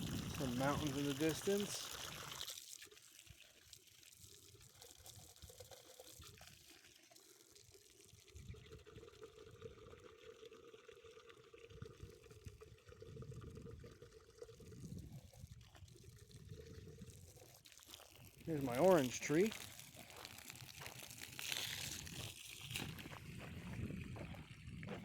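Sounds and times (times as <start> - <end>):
wind buffeting microphone: 0.0 - 0.7, 22.8 - 25.0.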